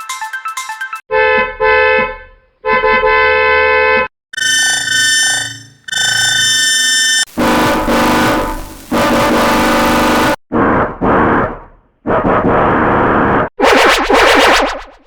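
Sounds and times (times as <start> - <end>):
higher-pitched horn honks: 7.3 - 10.4.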